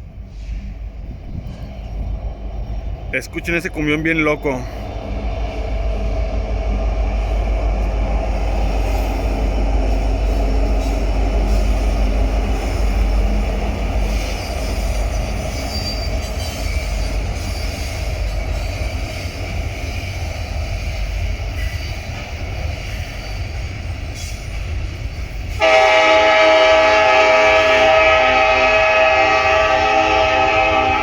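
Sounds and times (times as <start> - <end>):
diesel locomotive rumbling: 0.0 - 31.0
locomotive air horn chord: 25.6 - 31.0.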